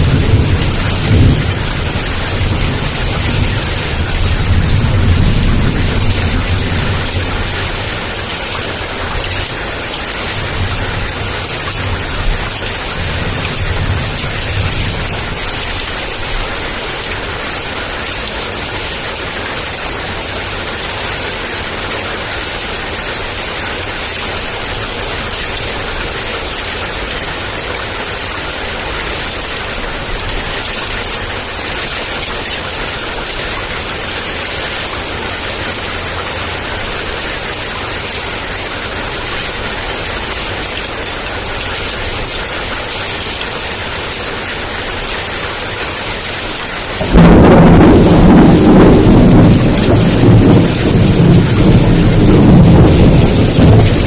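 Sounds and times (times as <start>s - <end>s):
low thunder rumble: 0.0s - 17.5s, 46.9s - 54.0s
heavy rain hissing: 0.0s - 54.0s.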